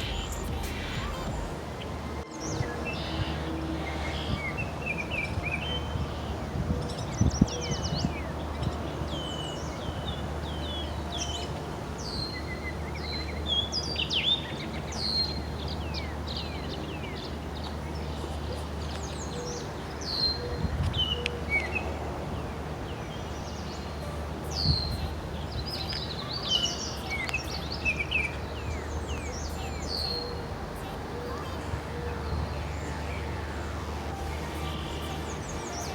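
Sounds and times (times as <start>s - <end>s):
songbirds chirping: 0.0s - 35.9s
steady low rumble: 0.0s - 35.9s.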